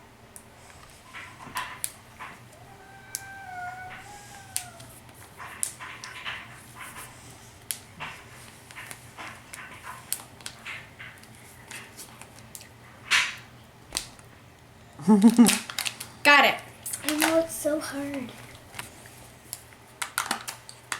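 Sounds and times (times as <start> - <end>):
plastic packaging crinkling: 15.1 - 16.2, 16.8 - 17.5, 18.1 - 20.9.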